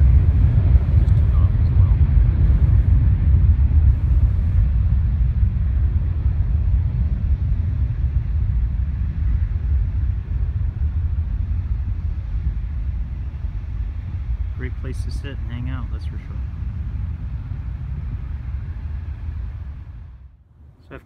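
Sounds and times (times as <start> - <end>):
jet airliners rumbling: 0.0 - 21.0.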